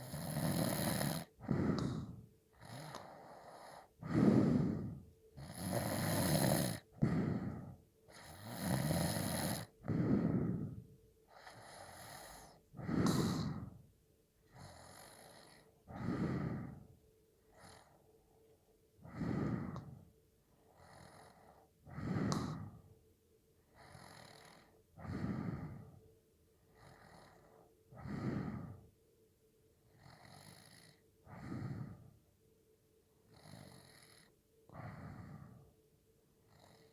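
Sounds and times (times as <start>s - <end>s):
person snoring: 0.0s - 13.8s, 20.8s - 22.8s.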